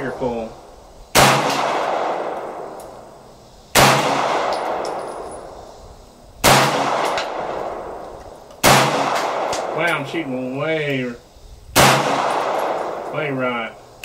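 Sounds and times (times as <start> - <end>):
pistol shots with echo: 1.1 - 3.0, 3.7 - 5.5, 6.4 - 8.0, 8.6 - 10.2, 11.8 - 13.1.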